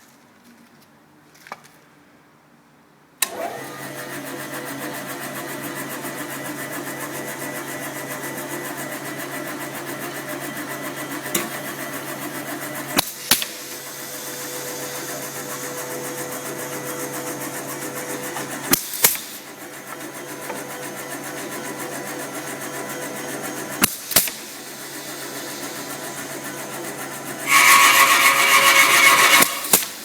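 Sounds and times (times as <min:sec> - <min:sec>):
electric motor humming: 0:27.5 - 0:30.0.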